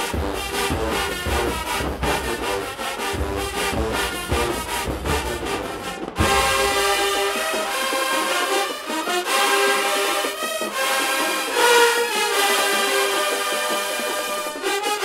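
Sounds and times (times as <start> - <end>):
marching band drum beat: 0.0 - 11.3
brass horns playing: 0.0 - 14.0.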